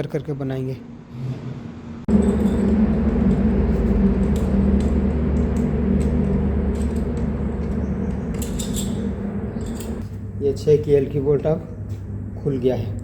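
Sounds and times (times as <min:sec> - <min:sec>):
engine humming: 0:02.0 - 0:13.0
metal tools clicking: 0:06.7 - 0:10.0.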